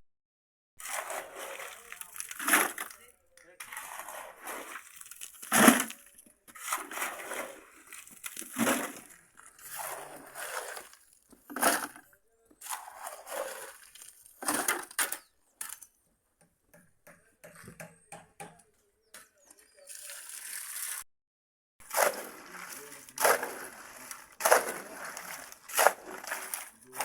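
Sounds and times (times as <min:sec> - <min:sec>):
shovel scraping through sand: 0:00.8 - 0:03.0, 0:03.6 - 0:12.0, 0:12.6 - 0:15.2, 0:21.8 - 0:27.0.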